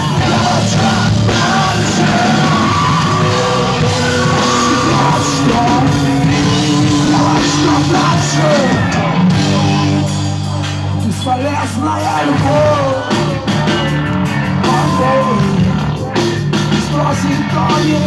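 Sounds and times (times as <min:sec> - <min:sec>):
live rock band with vocals: 0:00.0 - 0:18.0.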